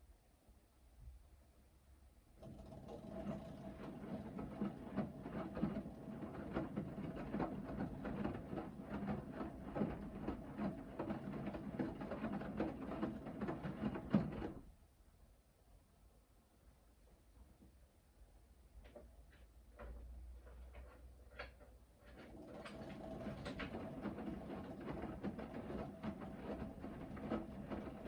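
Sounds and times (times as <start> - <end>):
washing machine motor hum: 2.4 - 14.7, 22.0 - 28.0
wet laundry tumbling and thudding: 22.8 - 28.0.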